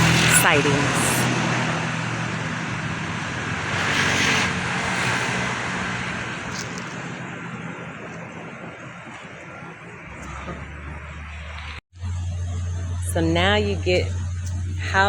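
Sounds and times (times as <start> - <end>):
motor vehicle passing: 0.0 - 15.0.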